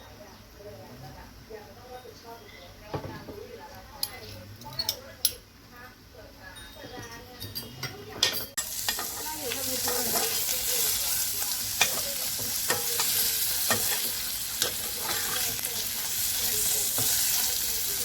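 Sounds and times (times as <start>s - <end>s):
vegetables sizzling in hot oil: 8.6s - 18.0s.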